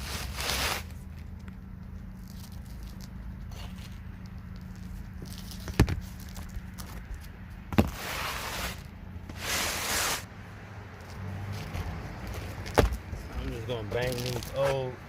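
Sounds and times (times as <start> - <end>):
rustling scrapes: 0.0 - 10.3, 11.0 - 14.9.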